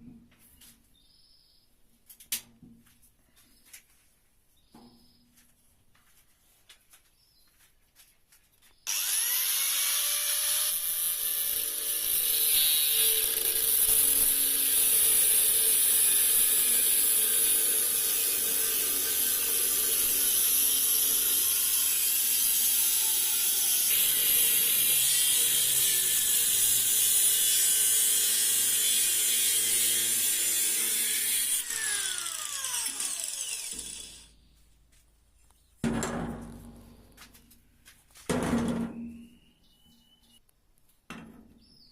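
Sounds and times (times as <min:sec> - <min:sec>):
electric power tool grinding: 0:08.9 - 0:34.4.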